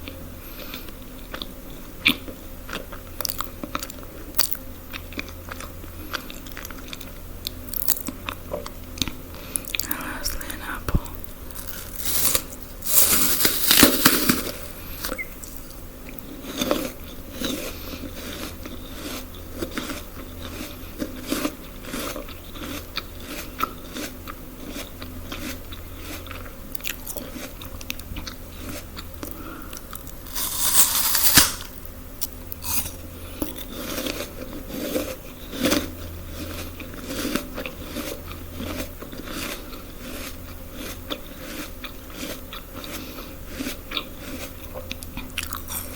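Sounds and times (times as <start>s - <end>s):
crunchy bites of food: 1.4s - 45.9s.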